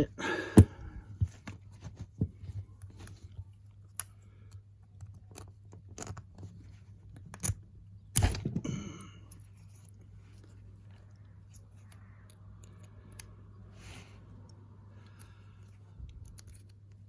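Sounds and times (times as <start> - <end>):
metal tools clicking on lock: 16.1 - 17.0.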